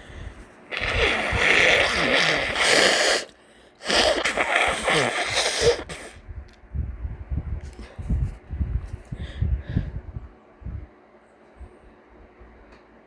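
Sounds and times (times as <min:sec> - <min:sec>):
congested nasal blasts: 0:00.7 - 0:06.2.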